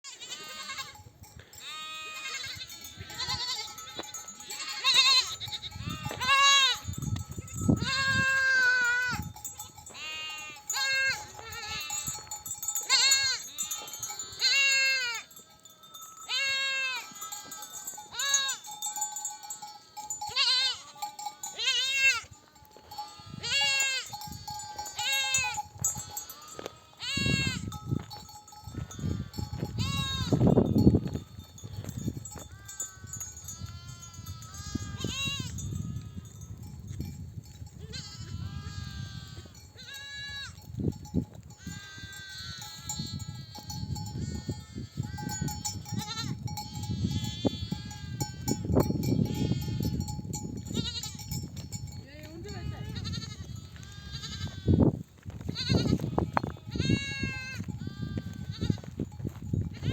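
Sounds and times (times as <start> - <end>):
sheep bleating: 0.0 - 1.0, 1.6 - 6.9, 7.8 - 15.3, 16.3 - 18.6, 19.8 - 27.8, 28.8 - 30.5, 32.6 - 36.3, 37.8 - 40.6, 41.6 - 45.3, 47.0 - 48.0, 50.7 - 51.2, 52.5 - 54.8, 55.5 - 58.9.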